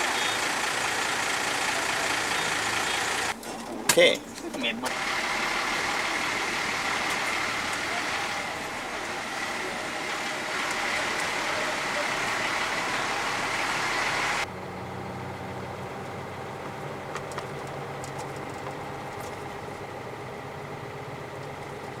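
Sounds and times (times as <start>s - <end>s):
combine harvester mechanical din: 0.0s - 3.4s, 4.9s - 14.5s
engine hum: 0.0s - 22.0s.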